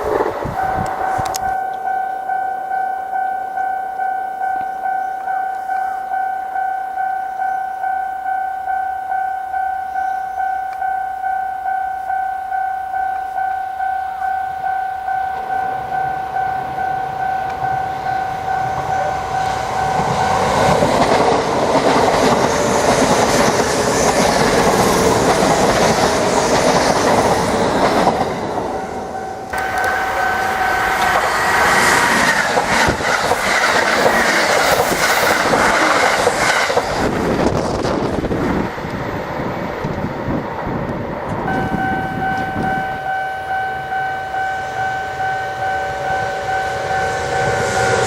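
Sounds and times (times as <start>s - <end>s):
level-crossing bell two-tone pulse: 0.0s - 23.5s, 24.6s - 32.3s, 41.5s - 48.0s
train wheel and rail clatter: 14.2s - 48.0s.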